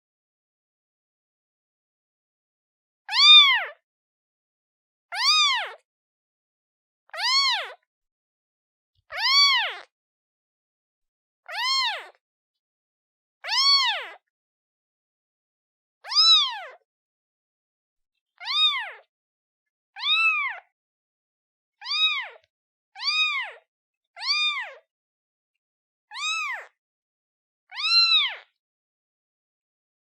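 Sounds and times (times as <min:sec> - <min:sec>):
kitten meowing: 0:03.1 - 0:03.8, 0:05.2 - 0:05.8, 0:07.2 - 0:07.8, 0:09.2 - 0:09.9, 0:11.5 - 0:12.2, 0:13.5 - 0:14.2, 0:16.1 - 0:16.8, 0:18.4 - 0:19.0, 0:20.0 - 0:20.6, 0:21.8 - 0:22.4, 0:23.0 - 0:23.6, 0:24.2 - 0:24.8, 0:26.1 - 0:26.7, 0:27.7 - 0:28.4.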